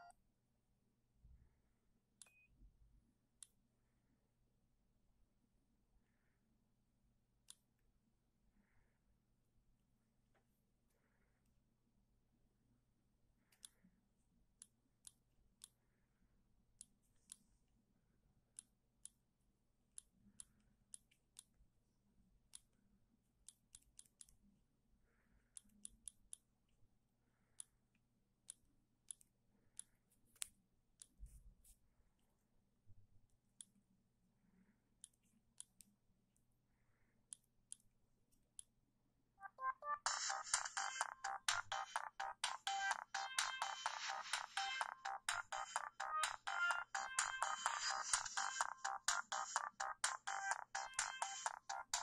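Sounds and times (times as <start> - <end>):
phone ringtone: 39.4 - 52.0.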